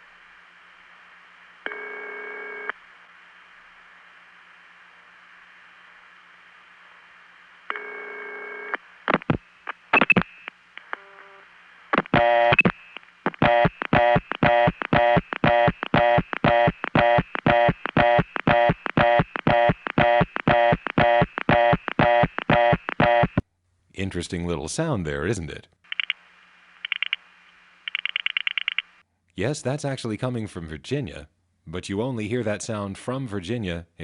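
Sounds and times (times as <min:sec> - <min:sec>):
telephone line hiss: 0:01.6 - 0:02.8, 0:07.7 - 0:23.4, 0:25.9 - 0:29.0
line clicks: 0:12.0 - 0:23.4, 0:25.9 - 0:26.2, 0:26.8 - 0:29.0
steady signalling tone: 0:12.2 - 0:23.4
short buzzy dial pulses: 0:13.4 - 0:23.4.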